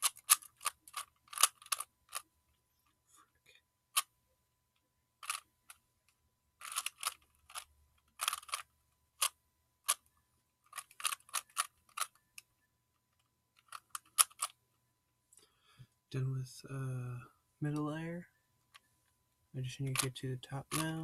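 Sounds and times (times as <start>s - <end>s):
puzzle cube layers clicking: 0.0s - 2.2s, 5.2s - 5.5s, 6.6s - 10.1s, 10.7s - 12.5s, 13.6s - 14.6s, 19.9s - 21.0s.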